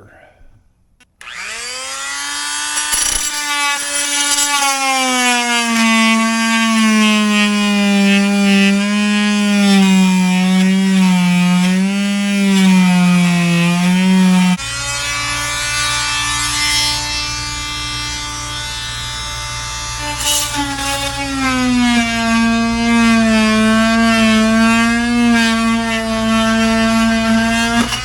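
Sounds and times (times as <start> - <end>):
oscillating tool cutting wood: 1.0 - 28.0.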